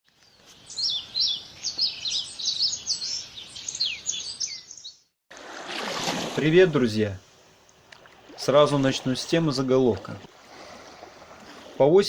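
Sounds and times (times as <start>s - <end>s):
small birds chirping: 0.1s - 5.2s.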